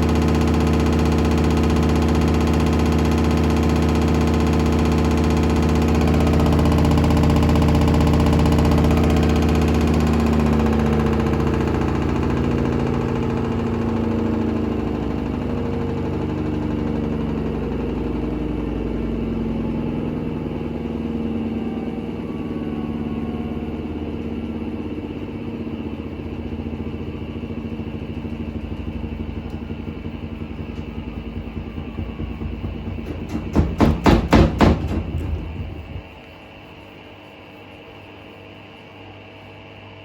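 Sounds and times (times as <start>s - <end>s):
washing machine winding down: 0.0s - 37.1s
washing machine drum banging: 26.3s - 36.6s.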